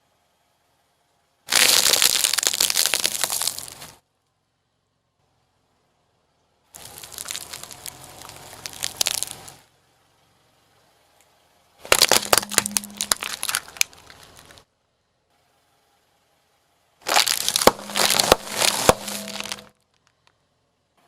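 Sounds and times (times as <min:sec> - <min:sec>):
objects crushed under car tyre: 0:01.5 - 0:04.0, 0:06.8 - 0:09.6, 0:11.8 - 0:14.6, 0:17.0 - 0:20.3.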